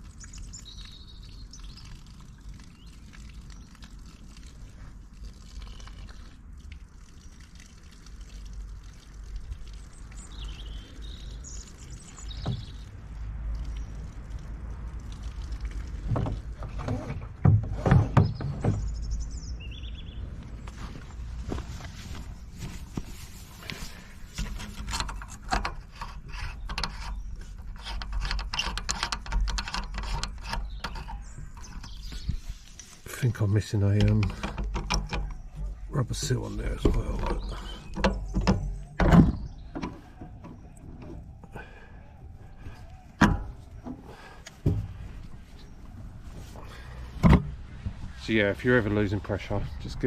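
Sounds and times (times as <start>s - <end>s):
bird chirping: 0.0s - 3.9s, 9.7s - 13.0s, 17.8s - 21.2s, 26.2s - 50.0s
water pouring and trickling: 0.0s - 50.0s
plastic parts clicking and scraping: 23.0s - 33.0s, 33.9s - 35.7s.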